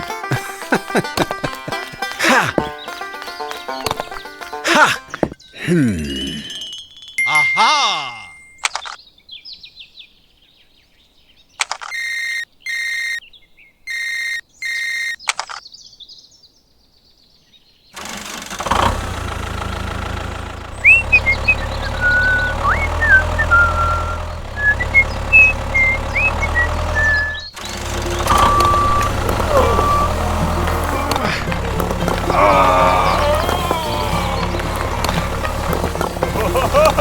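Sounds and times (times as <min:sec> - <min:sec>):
high chirping whistles: 0:06.1 - 0:07.6, 0:20.8 - 0:31.3
steady motor hum: 0:18.0 - 0:37.0
short electronic beeps: 0:20.9 - 0:27.6, 0:28.2 - 0:30.4.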